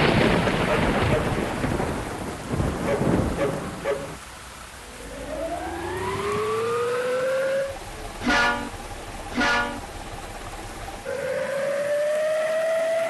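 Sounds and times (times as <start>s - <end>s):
low noisy rush: 0.0s - 13.0s
siren-like rising howl: 4.9s - 8.8s, 11.0s - 13.0s.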